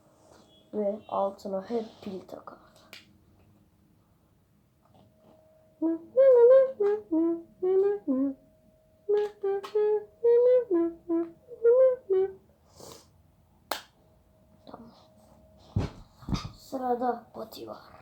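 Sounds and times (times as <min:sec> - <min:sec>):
child humming a tune: 0:05.8 - 0:08.4, 0:09.1 - 0:12.4.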